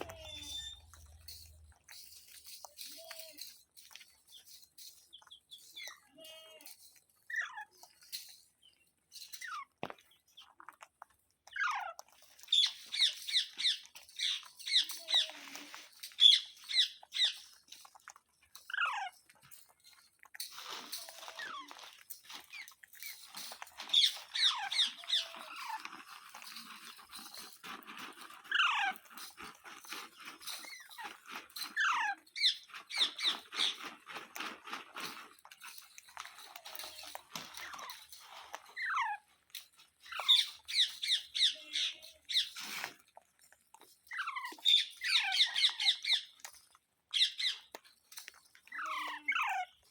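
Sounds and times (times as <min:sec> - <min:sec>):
parrot screeching: 0:44.1 - 0:46.3.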